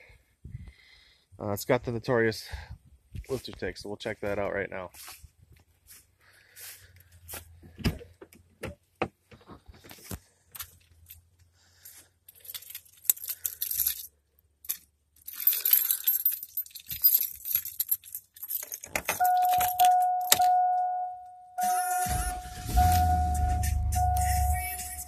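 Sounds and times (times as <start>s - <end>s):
keys jangling: 11.8s - 21.1s
electronic warning chime: 19.2s - 25.0s.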